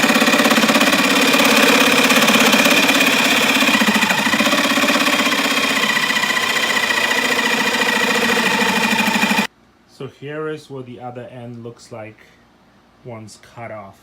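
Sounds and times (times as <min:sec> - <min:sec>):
power saw cutting plastic: 0:00.0 - 0:09.5.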